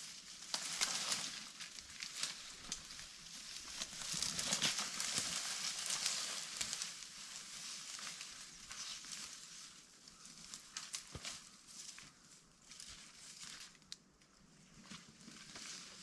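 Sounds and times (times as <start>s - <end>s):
footsteps crunching dry leaves: 0.0s - 13.8s.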